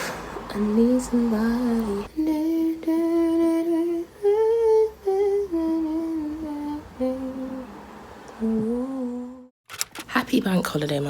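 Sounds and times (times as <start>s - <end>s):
woman humming: 8.4s - 9.5s.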